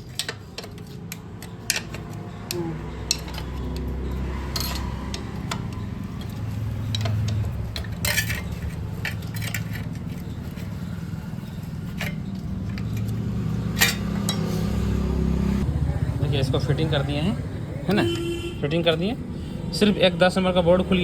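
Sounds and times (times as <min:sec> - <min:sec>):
metal tools clinking: 0:00.0 - 0:14.9.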